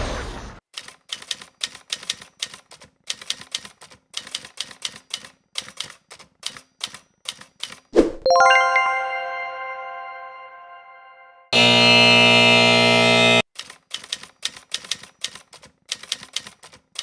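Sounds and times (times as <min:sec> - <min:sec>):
typewriter keys clacking: 0:00.8 - 0:07.9, 0:13.5 - 0:17.0.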